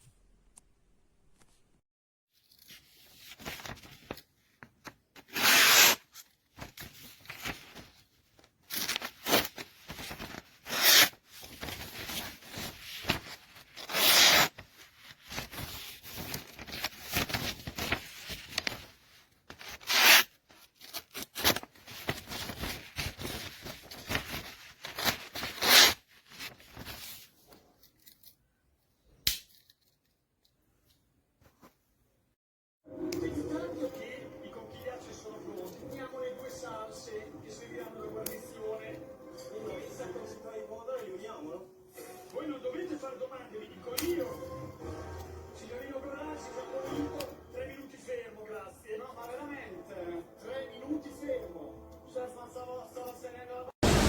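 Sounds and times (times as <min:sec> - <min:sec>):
pocket knife scraping and rubbing: 0:05.3 - 0:06.0, 0:10.7 - 0:11.1, 0:13.8 - 0:14.5.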